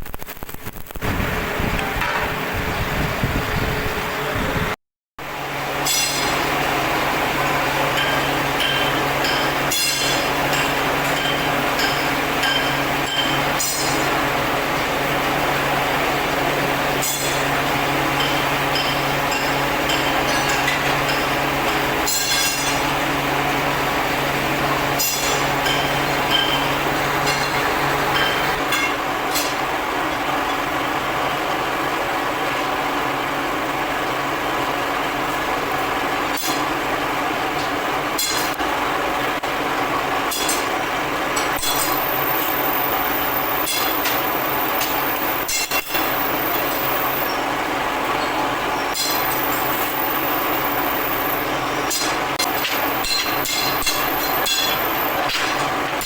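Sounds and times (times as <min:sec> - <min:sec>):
mechanical running noise: 0:41.0 - 0:56.0
sharp metallic clinks: 0:41.6 - 0:47.4, 0:48.2 - 0:55.6.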